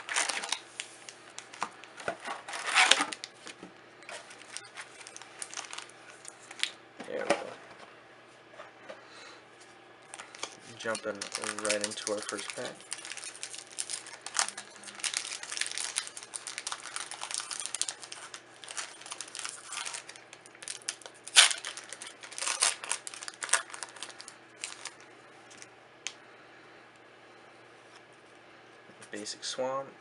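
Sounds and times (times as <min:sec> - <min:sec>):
loud plastic crackle: 0:00.0 - 0:00.6, 0:01.3 - 0:03.3, 0:04.2 - 0:06.8, 0:10.1 - 0:25.6
plastic wrapper crinkling: 0:00.0 - 0:06.8, 0:10.0 - 0:26.2.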